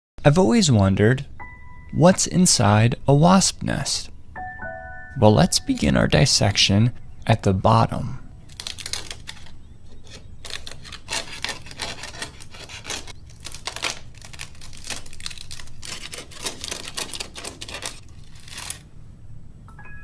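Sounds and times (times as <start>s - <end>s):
wasp nest paper tearing: 5.7s - 6.4s, 8.5s - 18.9s.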